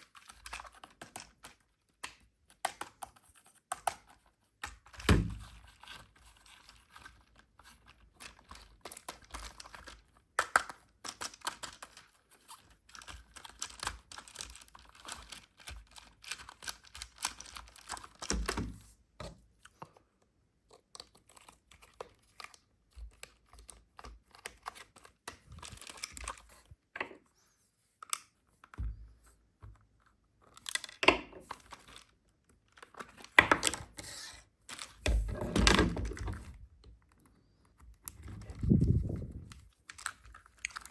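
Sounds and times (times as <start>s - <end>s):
plastic and paper crinkling: 4.8s - 18.9s, 21.0s - 26.7s, 29.7s - 40.9s.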